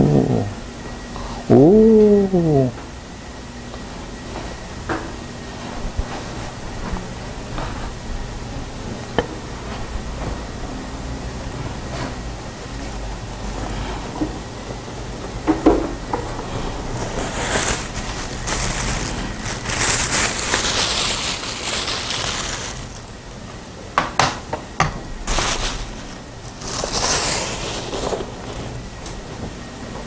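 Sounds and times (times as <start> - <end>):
close crinkling and rustling: 17.0 - 23.6, 25.0 - 29.6.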